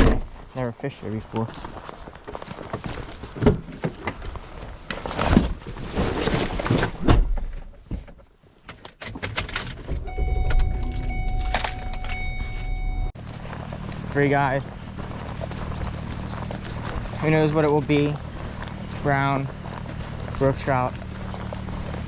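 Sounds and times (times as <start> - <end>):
low rumble: 9.9 - 22.0
steady multi-pitch tone: 10.1 - 13.2.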